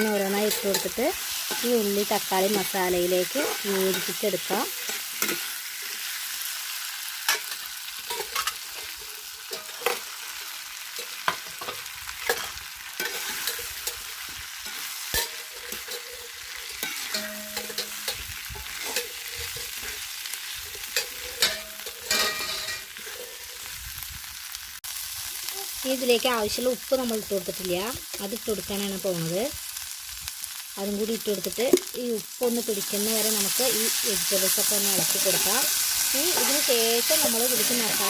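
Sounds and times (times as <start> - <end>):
spoon scraping and knocking pan: 0.0 - 6.0, 11.0 - 23.4, 34.6 - 38.0
vegetables sizzling in a pan: 0.0 - 38.0.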